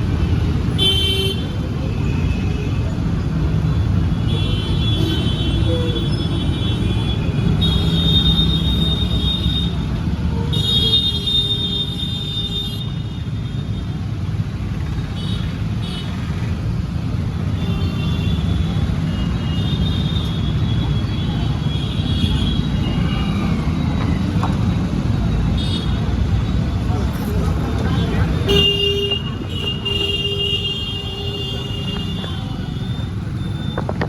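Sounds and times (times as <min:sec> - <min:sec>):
traffic rumble: 0:00.0 - 0:34.0
vehicle horns honking: 0:27.9 - 0:33.8.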